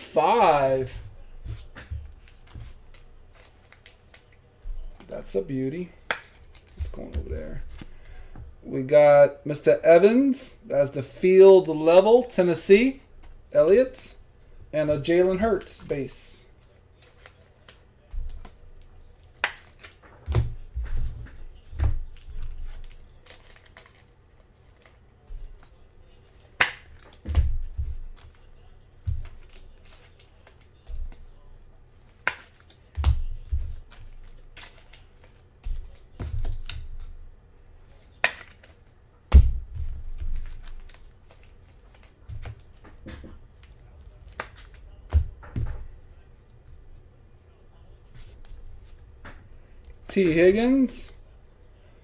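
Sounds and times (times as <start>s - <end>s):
cards clicking and tapping: 6.0s - 8.0s, 17.0s - 21.0s, 32.0s - 45.8s.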